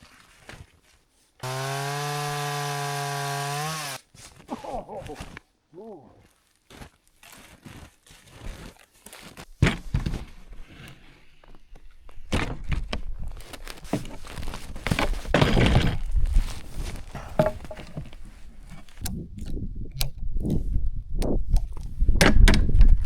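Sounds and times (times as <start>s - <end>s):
branches cracking and rustling: 11.4s - 20.1s
wood thumps: 13.7s - 19.2s.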